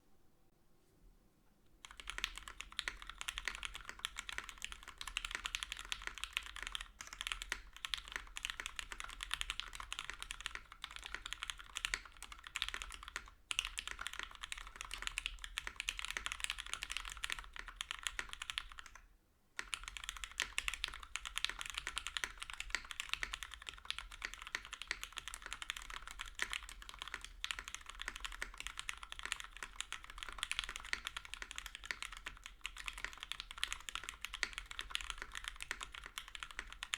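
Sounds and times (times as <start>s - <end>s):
mechanical keyboard typing: 1.8s - 19.0s, 19.6s - 36.9s.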